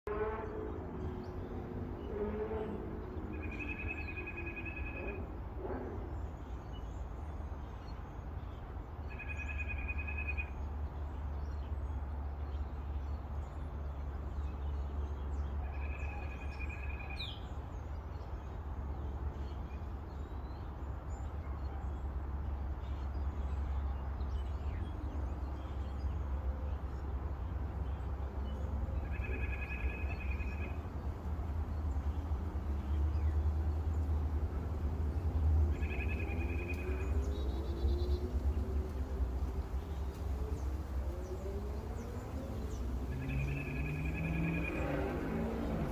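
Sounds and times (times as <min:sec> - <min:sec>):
bird trilled call: 0:29.0 - 0:30.8, 0:35.7 - 0:37.2.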